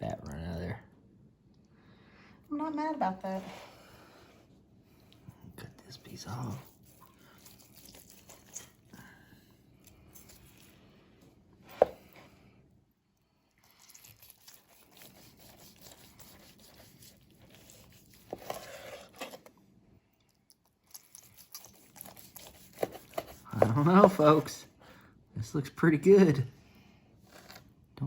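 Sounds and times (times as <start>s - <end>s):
knife cutting meat on board: 6.4s - 8.8s, 13.9s - 19.4s, 21.0s - 24.5s.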